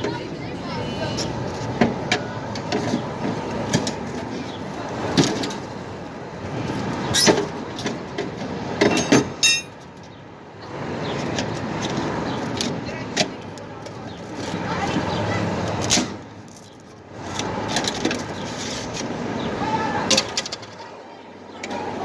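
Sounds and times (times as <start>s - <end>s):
street traffic: 0.0s - 22.0s
pry bar knocking on metal: 8.9s - 9.7s.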